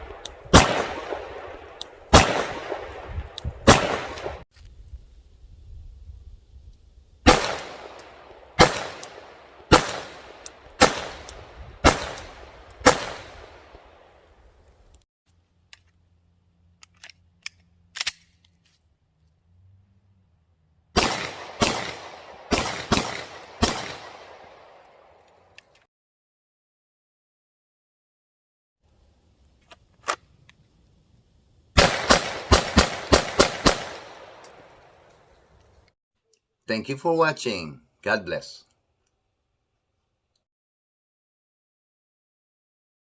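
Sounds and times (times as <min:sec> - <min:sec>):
pistol shots with echo: 0:00.0 - 0:04.4, 0:07.3 - 0:13.7, 0:21.0 - 0:25.1, 0:31.8 - 0:34.7.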